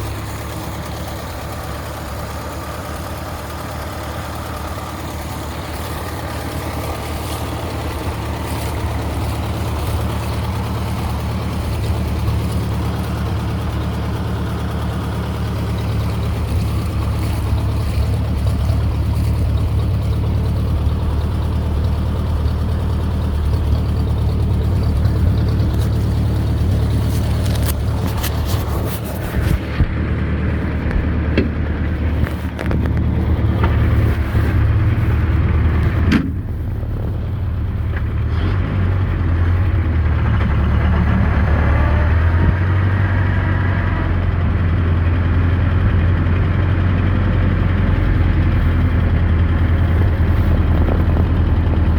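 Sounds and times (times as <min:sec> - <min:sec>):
car engine running: 0:00.0 - 0:51.9.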